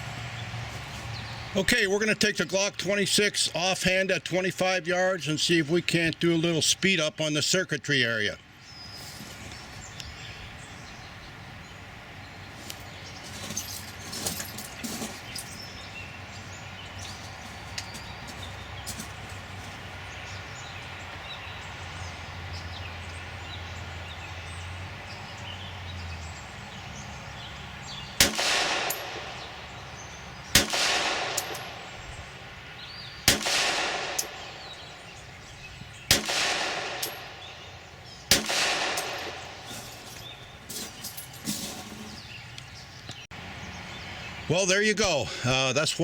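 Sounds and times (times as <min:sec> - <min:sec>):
pistol shots with echo: 0:28.2 - 0:29.6, 0:30.5 - 0:31.9, 0:33.2 - 0:34.7, 0:36.1 - 0:37.6, 0:38.3 - 0:39.6.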